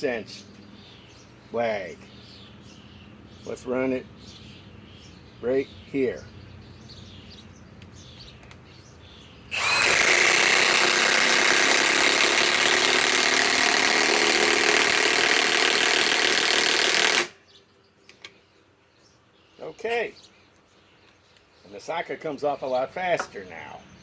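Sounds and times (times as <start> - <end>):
impact wrench hammering: 9.6 - 17.3.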